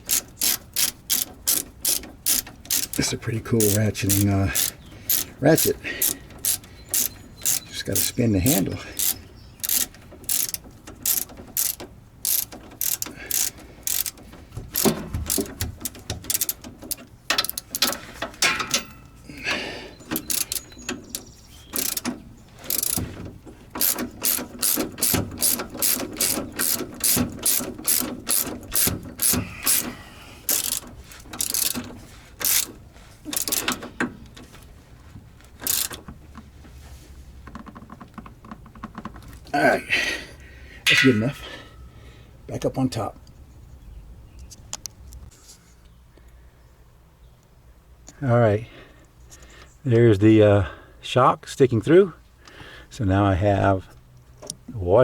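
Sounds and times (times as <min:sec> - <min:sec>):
ratchet wrench clicking: 0:00.0 - 0:19.1, 0:20.1 - 0:23.2, 0:23.8 - 0:33.9, 0:35.6 - 0:36.0.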